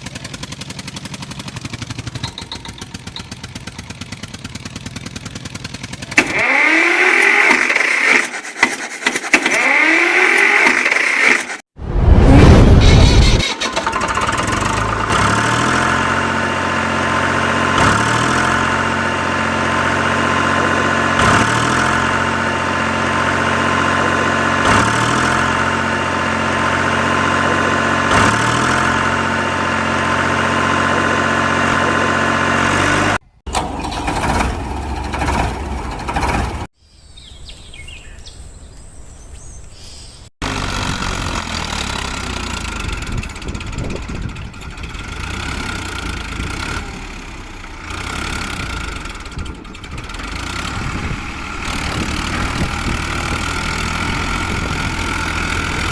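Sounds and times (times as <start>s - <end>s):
recorded tractor engine idling: 0.0s - 6.7s, 40.5s - 46.5s
abrupt mechanical noise bursts: 6.1s - 16.0s, 40.4s - 55.9s.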